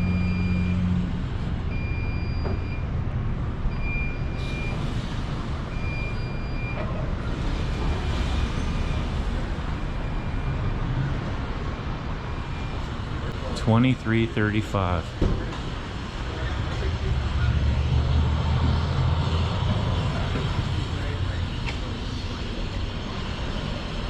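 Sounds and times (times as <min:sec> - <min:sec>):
vehicle backup alarm beeping: 0:00.0 - 0:03.0, 0:03.7 - 0:15.2
engine and traffic rumble: 0:00.0 - 0:24.0.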